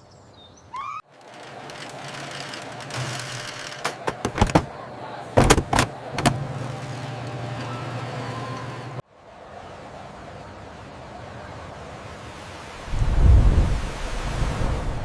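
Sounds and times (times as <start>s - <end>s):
noisy background: 1.1s - 12.6s.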